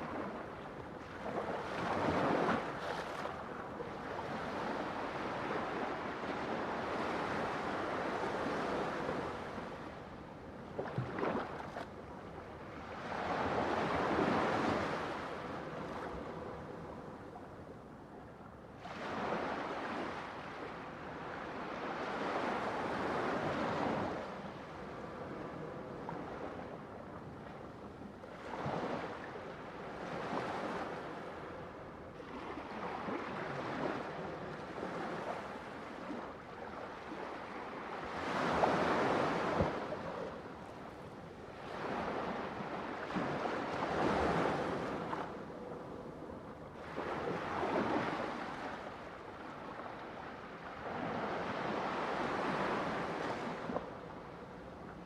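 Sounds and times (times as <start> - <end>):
ocean waves breaking on shore: 28.3 - 45.8, 46.8 - 54.6.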